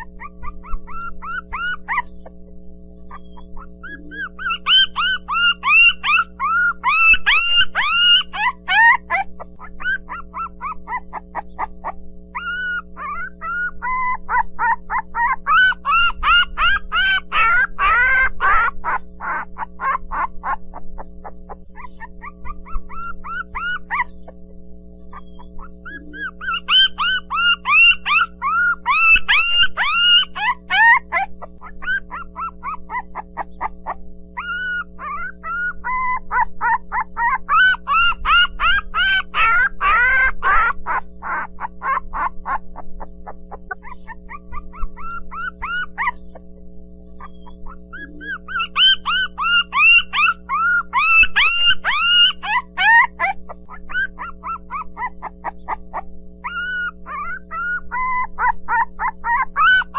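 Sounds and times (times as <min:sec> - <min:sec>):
low hum: 0:00.0 - 0:29.1
puppies whining and yelping: 0:00.0 - 0:59.9.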